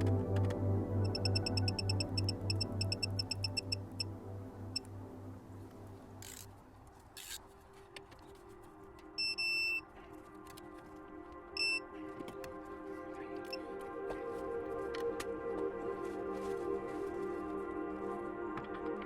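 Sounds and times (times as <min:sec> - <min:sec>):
music with pulsing beat: 0:00.0 - 0:06.0.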